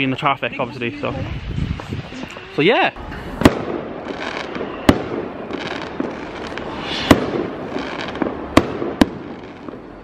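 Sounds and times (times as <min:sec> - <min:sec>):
fireworks bangs: 0:03.3 - 0:10.0.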